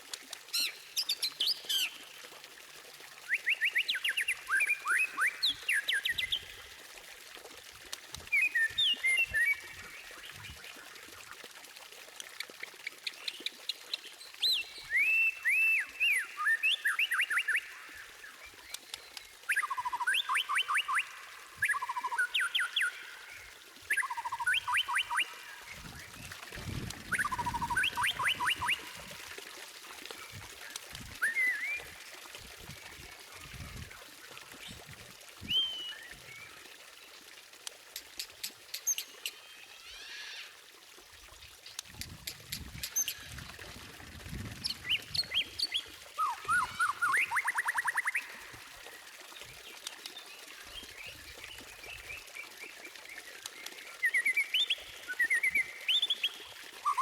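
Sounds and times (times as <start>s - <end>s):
songbird whistling: 35.5s - 36.0s.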